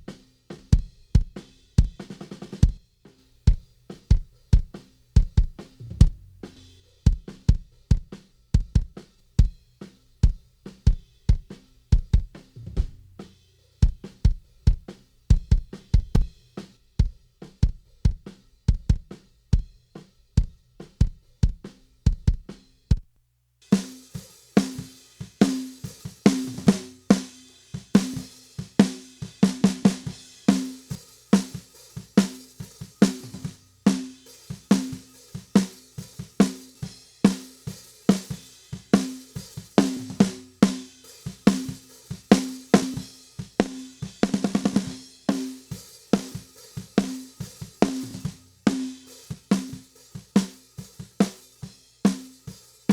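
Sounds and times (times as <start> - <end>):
kick drum: 0.0 - 2.0, 3.5 - 6.5, 7.1 - 9.6, 10.2 - 13.2, 13.8 - 16.4, 17.0 - 19.7, 20.4 - 23.1
drum kit beat with snare and hi-hat: 0.0 - 52.9.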